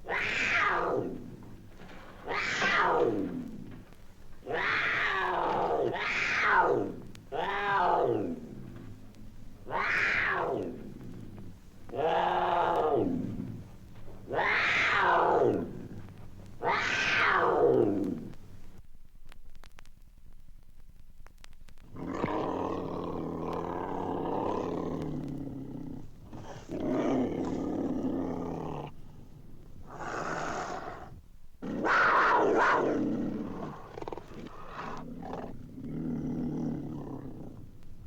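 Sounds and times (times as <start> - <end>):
cougar growling and snarling: 0.0 - 18.8, 21.8 - 38.0
cougar hissing: 21.9 - 38.0.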